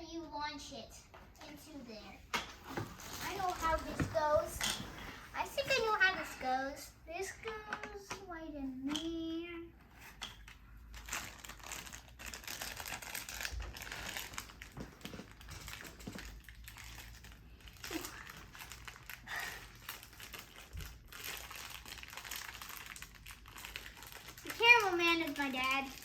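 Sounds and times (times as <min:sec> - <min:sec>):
plastic packaging crinkling: 0:10.8 - 0:26.0.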